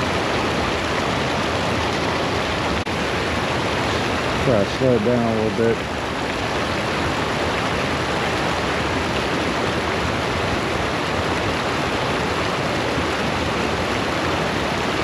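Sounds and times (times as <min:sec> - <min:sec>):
water pouring over waterfall: 0:00.0 - 0:15.0.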